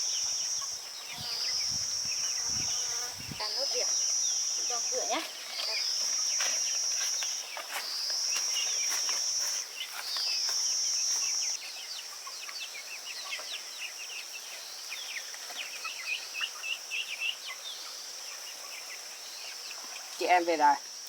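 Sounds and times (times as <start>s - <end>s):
high-pitched insect buzzing: 0.0s - 9.6s.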